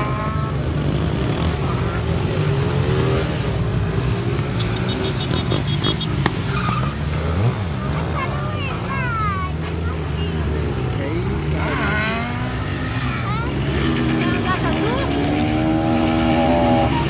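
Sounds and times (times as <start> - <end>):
motorcycle engines rumbling: 0.0 - 17.0
crowd voices: 5.8 - 17.0.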